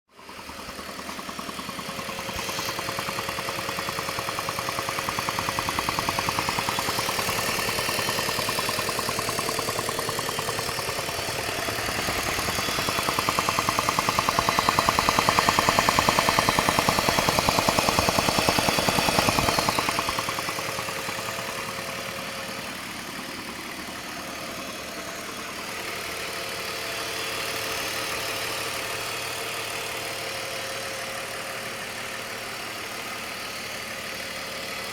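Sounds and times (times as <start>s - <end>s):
car engine idling with ticking: 0.1s - 34.9s.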